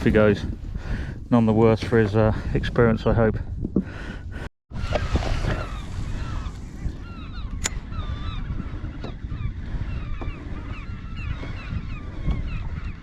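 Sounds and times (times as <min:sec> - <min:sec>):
wind and water rumble: 0:00.0 - 0:13.0
seabirds calling: 0:03.8 - 0:13.0.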